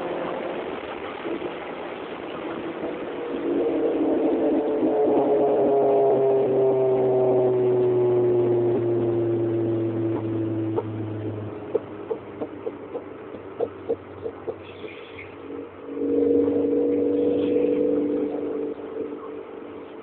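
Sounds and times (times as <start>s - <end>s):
low hum: 0.0s - 20.0s
whining tone sliding down in pitch: 3.4s - 12.6s, 15.2s - 20.0s
sharp ticks: 11.7s - 15.4s.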